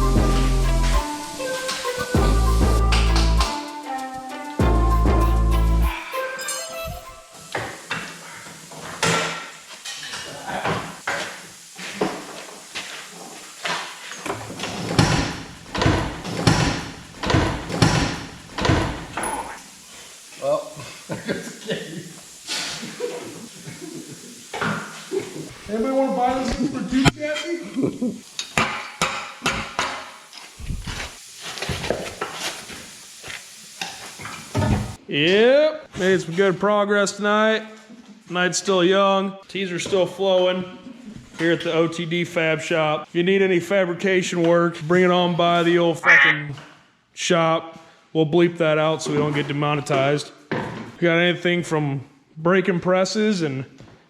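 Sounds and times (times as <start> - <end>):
steady hiss: 0.0 - 6.4, 7.2 - 35.4
knocks and clatter: 14.6 - 19.2.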